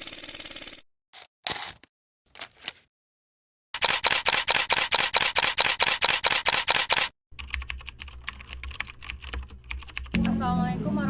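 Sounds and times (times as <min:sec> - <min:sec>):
rapid typing-like clicking: 0:03.8 - 0:10.3
low steady hum: 0:10.2 - 0:11.0.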